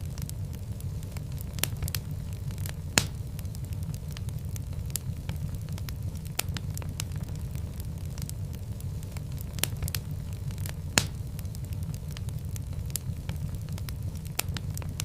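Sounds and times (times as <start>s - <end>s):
low fire rumble: 0.0s - 15.0s
wood fire crackling and popping: 0.0s - 15.0s.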